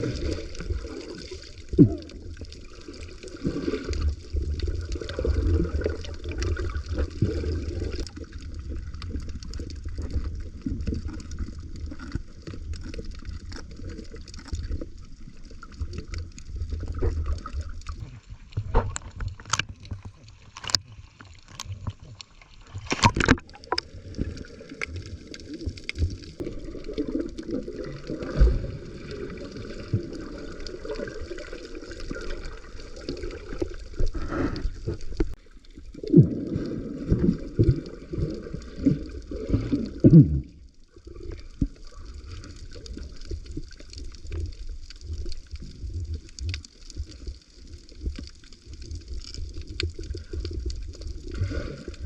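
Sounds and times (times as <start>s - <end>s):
muffled underwater gurgling: 0.0s - 19.2s, 22.7s - 46.4s
sharp clicks and crackles: 3.9s - 28.5s, 40.4s - 52.0s.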